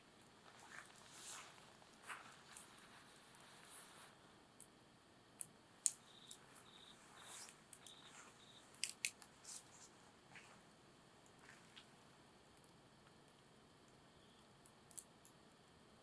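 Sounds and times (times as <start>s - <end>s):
wood fire crackling: 5.4s - 10.0s
faint high-pitched chirps: 5.8s - 8.9s, 14.0s - 14.6s.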